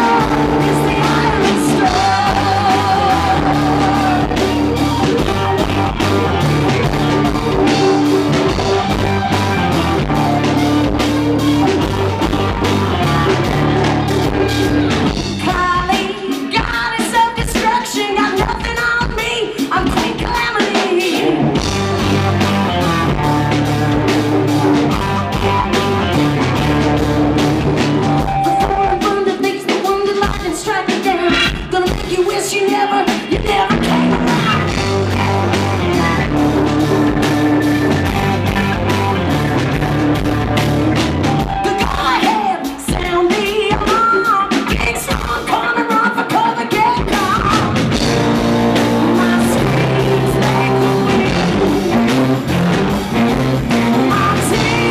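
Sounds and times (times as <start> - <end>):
woman singing: 0.0 - 5.8, 15.4 - 21.7, 28.2 - 37.3, 41.4 - 52.2, 53.7 - 54.9
rock band playing live: 0.0 - 54.9.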